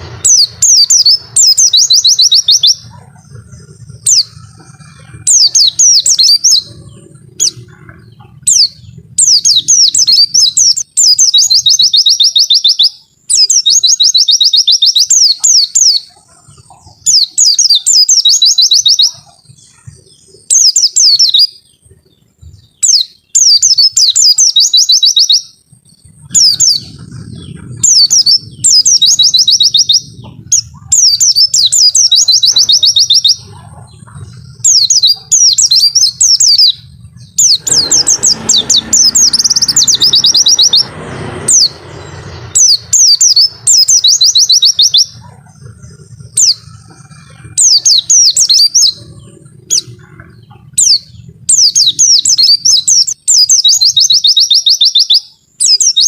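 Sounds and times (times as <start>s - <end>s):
rushing noise: 0.0s - 10.9s, 26.0s - 50.2s
low steady hum: 0.0s - 11.7s, 25.4s - 53.4s
bird singing rapid high notes: 0.0s - 56.0s.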